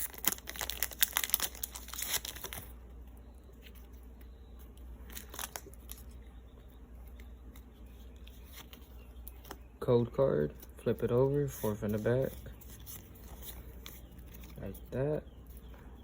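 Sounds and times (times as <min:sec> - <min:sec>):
foil wrapper crinkling: 0:00.0 - 0:02.8, 0:05.0 - 0:06.2.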